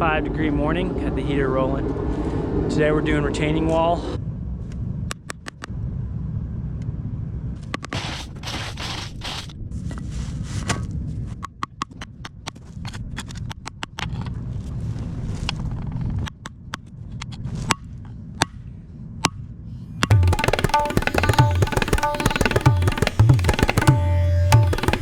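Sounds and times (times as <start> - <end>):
hand-drum music: 20.0 - 25.0
sharp clicks and knocks: 20.0 - 25.0.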